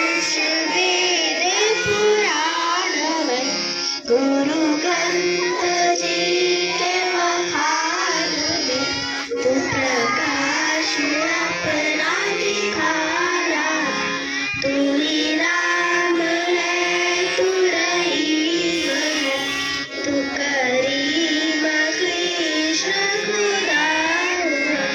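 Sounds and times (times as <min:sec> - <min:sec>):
children singing: 0:00.0 - 0:24.9
school band playing: 0:18.6 - 0:20.6.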